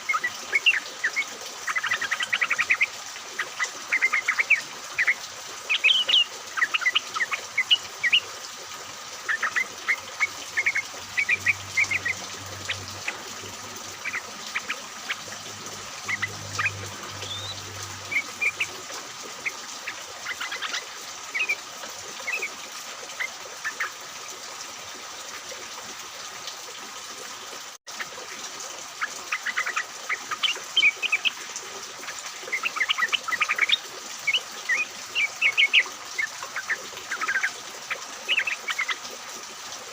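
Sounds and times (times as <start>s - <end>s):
bulbuls chirping: 9.3s - 21.6s.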